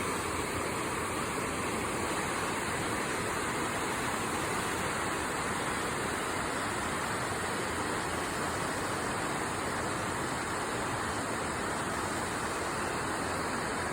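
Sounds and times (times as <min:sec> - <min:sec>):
river water babbling over stones: 0:00.0 - 0:13.9.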